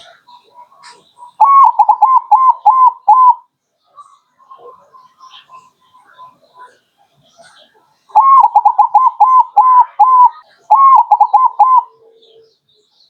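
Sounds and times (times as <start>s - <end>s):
dove cooing: 0.0s - 3.4s, 8.1s - 12.5s.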